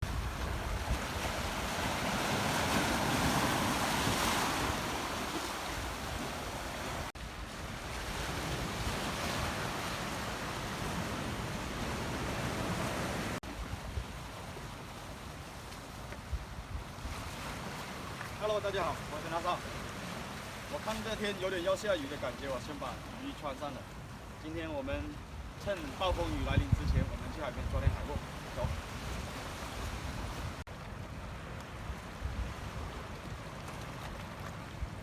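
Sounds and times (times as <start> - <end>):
wind buffeting the microphone: 0.0 - 14.8, 16.2 - 17.8, 25.1 - 33.6
sea surf washing in: 0.0 - 16.0.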